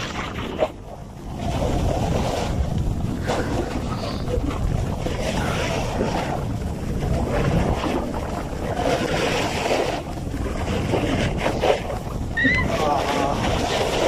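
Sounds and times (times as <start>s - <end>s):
snowboard scraping over snow: 0.0s - 12.2s
wind buffeting microphone: 0.0s - 14.0s.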